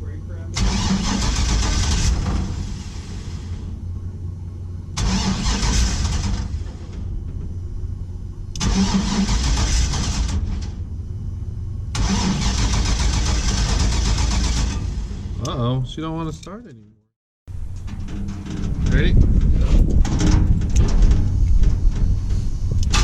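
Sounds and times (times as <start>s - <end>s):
engine starter cranking: 0.5s - 3.7s, 5.0s - 7.2s, 8.5s - 10.8s, 11.9s - 15.6s, 22.8s - 23.0s.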